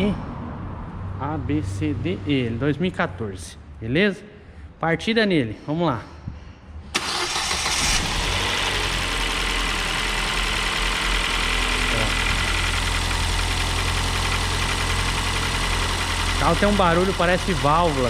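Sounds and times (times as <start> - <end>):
car engine idling: 7.0 - 18.0.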